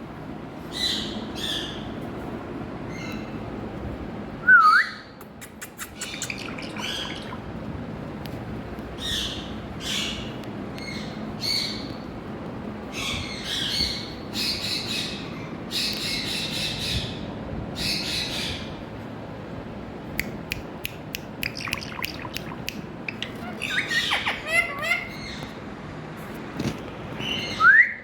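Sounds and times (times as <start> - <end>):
sharp bird clicks: 5.2 - 6.8, 20.2 - 23.4
parakeet squawking: 5.6 - 7.4, 21.4 - 25.5.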